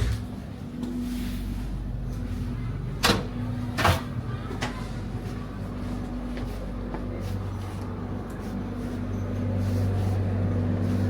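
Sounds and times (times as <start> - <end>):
train humming: 0.0 - 11.0.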